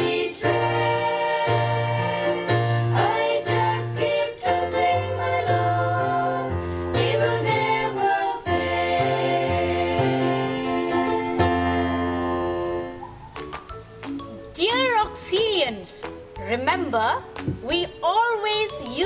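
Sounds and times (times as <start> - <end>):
group singing a hymn: 0.0 - 12.2
keyboard accompaniment: 0.0 - 19.0.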